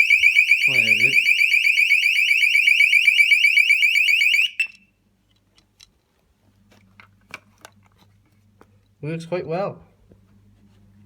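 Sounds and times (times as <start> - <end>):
electronic alarm siren warbling: 0.0 - 4.8.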